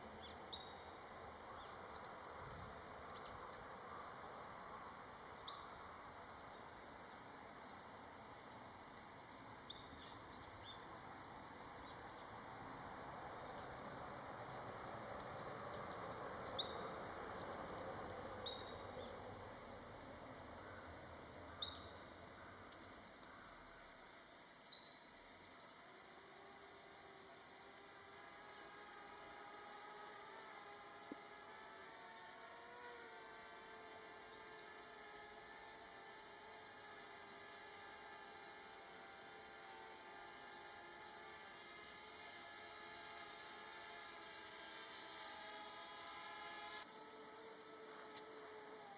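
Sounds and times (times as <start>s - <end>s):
soft hiss: 0.0s - 48.9s
finches giving high call notes: 14.4s - 19.2s.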